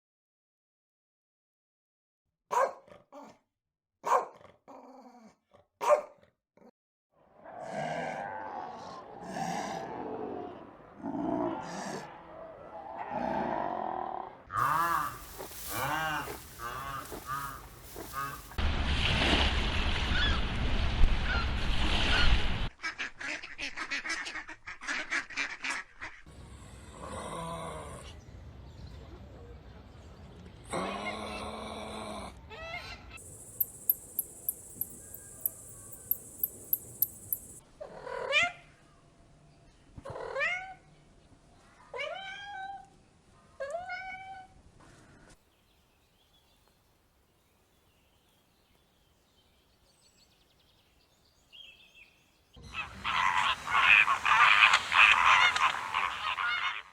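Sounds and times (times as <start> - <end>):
background noise: 7.4 - 18.8, 22.7 - 56.9
high steady hiss: 14.6 - 18.6, 52.8 - 56.5
waterfowl calling: 14.6 - 18.6, 33.2 - 37.6, 52.6 - 56.9
sharp regular ticks: 33.2 - 37.6, 53.4 - 56.5.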